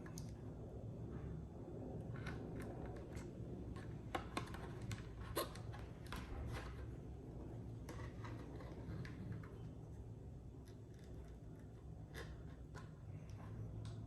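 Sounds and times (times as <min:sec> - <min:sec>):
low steady background hum: 0:00.0 - 0:14.0
small clicks and scrapes of parts: 0:02.1 - 0:06.9, 0:07.8 - 0:14.0.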